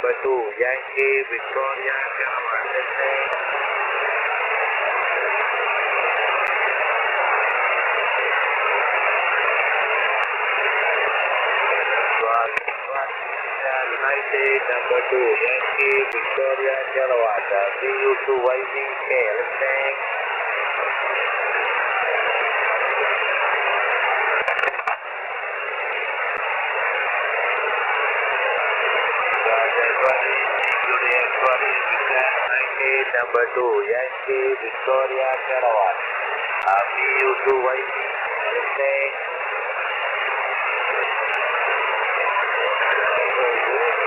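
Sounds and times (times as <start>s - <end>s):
radio receiver hiss: 0.0s - 44.0s
crackling radio clicks: 3.0s - 3.5s, 6.3s - 6.6s, 9.4s - 10.4s, 12.3s - 13.1s, 15.5s - 16.7s, 23.7s - 25.1s, 26.3s - 27.0s, 29.3s - 35.5s, 36.4s - 37.6s, 40.3s - 42.5s.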